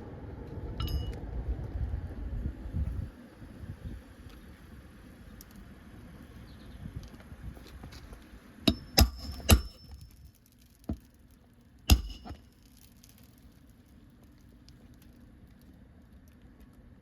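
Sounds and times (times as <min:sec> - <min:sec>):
hammer striking roofing nails: 0:08.7 - 0:09.8, 0:11.9 - 0:12.4.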